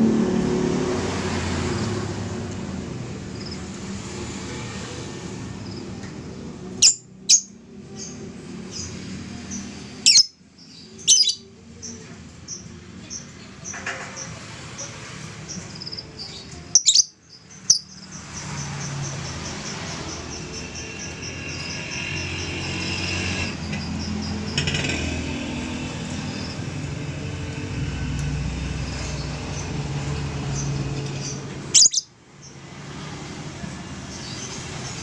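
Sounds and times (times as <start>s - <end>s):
bird high chirps: 6.8s - 8.2s, 9.5s - 13.3s, 15.5s - 19.1s, 30.5s - 32.1s
bird sharp shrieks: 31.7s - 32.1s.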